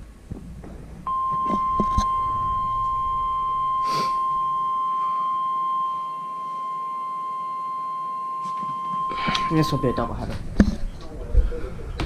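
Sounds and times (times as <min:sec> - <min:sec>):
steady alarm tone: 0:01.1 - 0:10.2.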